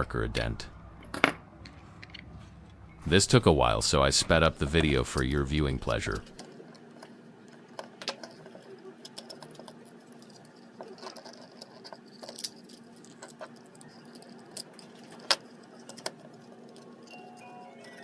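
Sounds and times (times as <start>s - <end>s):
screwdriver clicking and scraping plastic: 4.4s - 17.2s.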